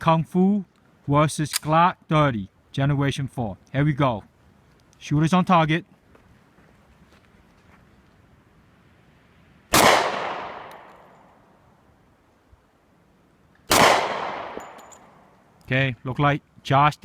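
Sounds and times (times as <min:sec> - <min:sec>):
pistol shots echoing: 0:09.7 - 0:11.1, 0:13.7 - 0:15.2.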